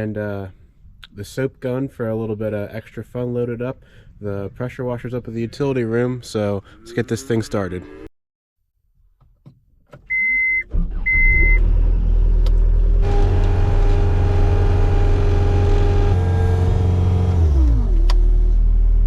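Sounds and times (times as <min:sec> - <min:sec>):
electronic warning beeps: 0:10.1 - 0:11.6
diesel engine running: 0:10.7 - 0:19.0
engine whine: 0:10.7 - 0:19.0.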